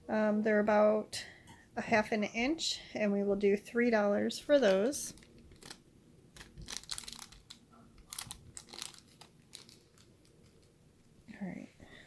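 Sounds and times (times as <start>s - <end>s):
jewelry crinkling and clicking: 4.6s - 11.3s.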